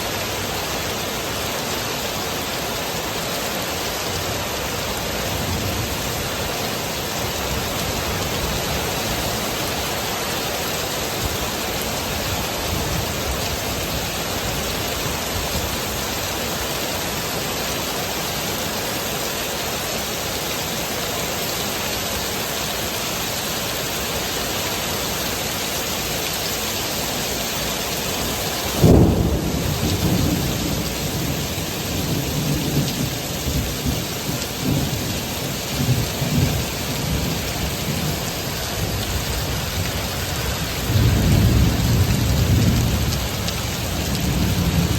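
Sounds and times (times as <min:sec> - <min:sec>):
heavy rain pouring: 0:00.0 - 0:44.9
rumbling thunder: 0:28.8 - 0:33.6, 0:40.8 - 0:44.9.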